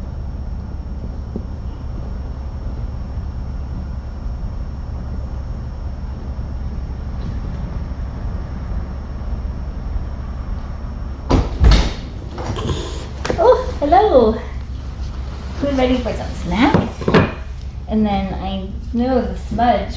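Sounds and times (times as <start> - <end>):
machinery rumbling: 0.0 - 19.9
loud knocks: 11.3 - 13.6, 16.6 - 17.5.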